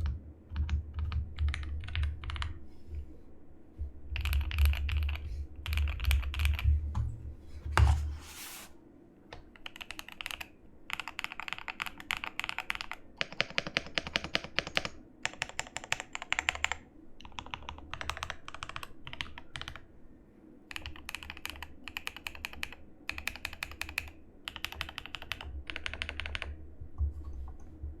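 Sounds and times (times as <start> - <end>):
mechanical keyboard typing: 0.0 - 2.5, 4.2 - 6.6, 9.6 - 19.8, 20.7 - 26.6.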